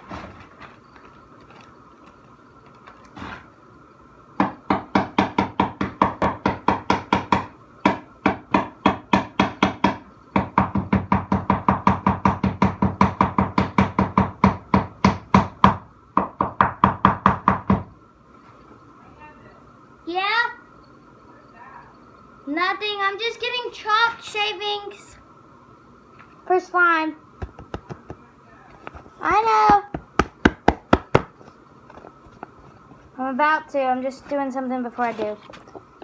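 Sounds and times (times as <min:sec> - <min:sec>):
chalk knocking on plastic container: 0:27.4 - 0:28.2.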